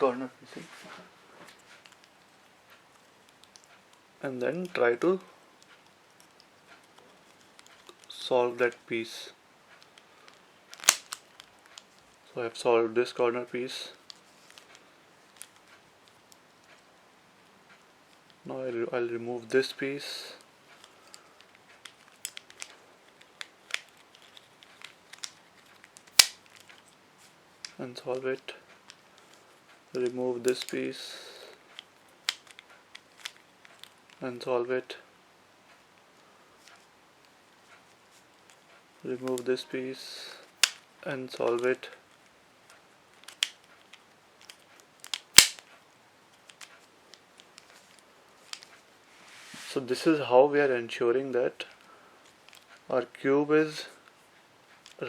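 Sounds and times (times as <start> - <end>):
plastic puzzle cube pieces clicking: 9.8 - 12.0, 20.7 - 26.8, 30.5 - 30.8, 31.7 - 34.2, 43.2 - 45.7
loud sharp plastic snap: 10.7 - 11.8, 26.0 - 26.6, 40.6 - 40.8, 44.4 - 45.8.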